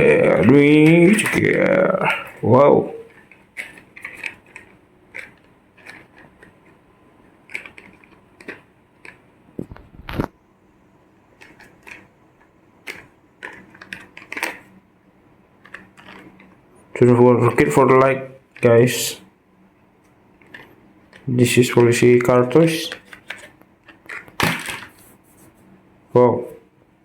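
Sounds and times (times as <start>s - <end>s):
plastic toy vehicles clicking and tapping: 0.2s - 2.4s, 3.1s - 9.3s, 11.4s - 12.1s, 12.8s - 14.7s, 15.6s - 16.6s, 20.4s - 25.0s.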